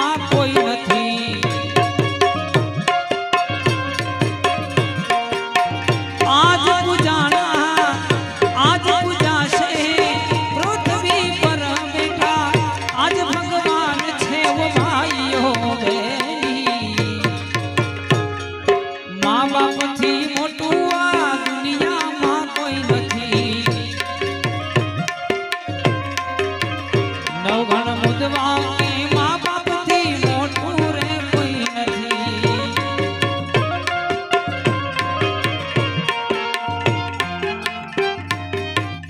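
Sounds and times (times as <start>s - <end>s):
tabla playing fast rhythm: 0.0s - 39.0s
melody of sliding notes: 32.4s - 39.0s.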